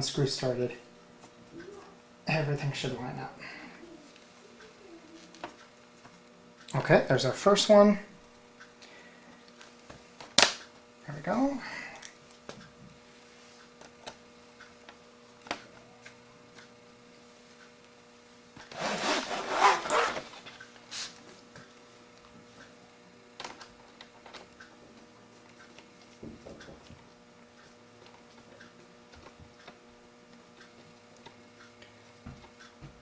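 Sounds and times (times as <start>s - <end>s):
faint steady hum: 0.0s - 33.0s
scraping rustle: 18.7s - 21.2s.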